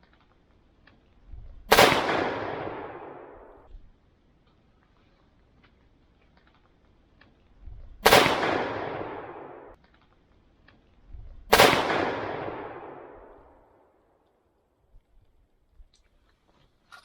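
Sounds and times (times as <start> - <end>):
rifle shots with echo: 1.7 - 3.7, 8.0 - 9.8, 11.5 - 14.0.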